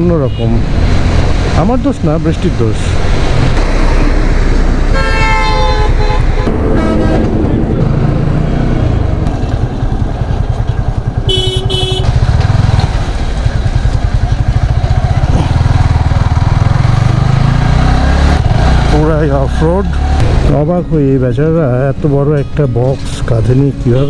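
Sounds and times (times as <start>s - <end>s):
motorcycle engine running: 3.0s - 20.5s
vehicle horn beeps: 4.9s - 7.3s, 11.2s - 12.2s.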